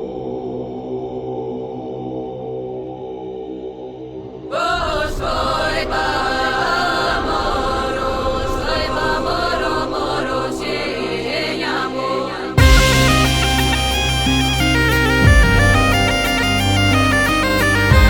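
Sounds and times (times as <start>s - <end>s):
chanted choral vocals: 0.0s - 18.0s
music beat: 12.6s - 18.0s.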